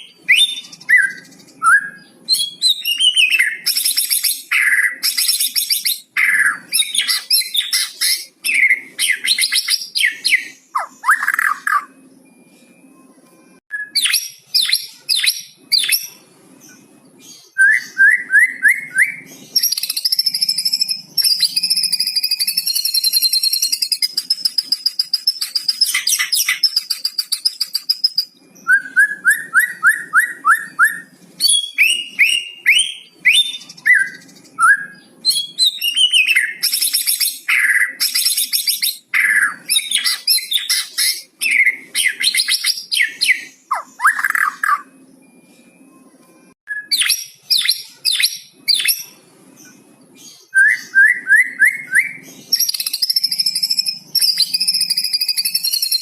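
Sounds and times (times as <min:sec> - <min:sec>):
songbird singing varied song: 0:13.7 - 0:45.5, 0:46.7 - 0:56.0.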